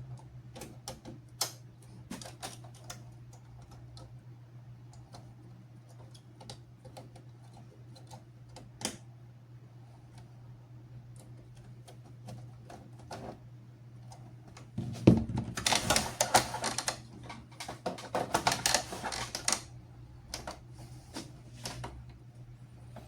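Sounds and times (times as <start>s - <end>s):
plastic and metal clatter: 14.8s - 19.7s.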